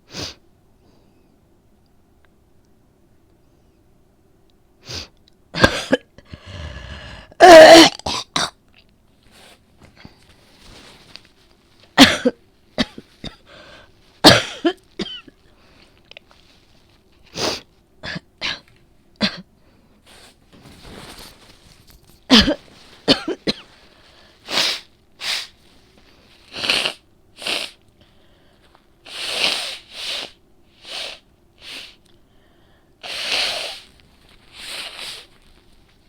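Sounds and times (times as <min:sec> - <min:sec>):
woman coughing: 0:05.6 - 0:06.3, 0:07.4 - 0:08.6, 0:12.0 - 0:13.5, 0:14.2 - 0:15.4, 0:18.0 - 0:19.5, 0:22.3 - 0:23.8.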